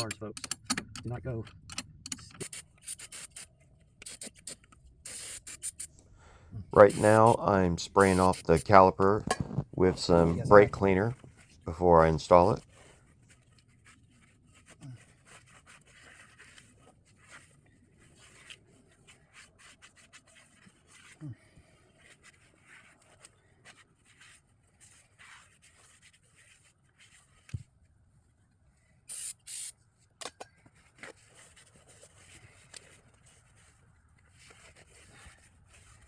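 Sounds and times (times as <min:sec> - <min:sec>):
rubbing and scraping hand work: 0:00.0 - 0:27.8, 0:30.6 - 0:36.0
aerosol can spraying: 0:02.3 - 0:06.0, 0:06.8 - 0:07.4, 0:08.0 - 0:08.6, 0:29.1 - 0:29.7.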